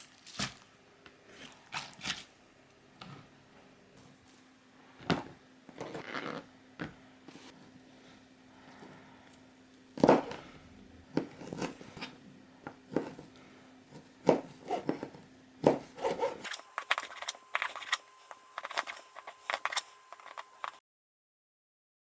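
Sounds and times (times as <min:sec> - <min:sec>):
background hum: 0:00.0 - 0:20.8
objects being handled: 0:04.0 - 0:07.8, 0:11.1 - 0:20.8.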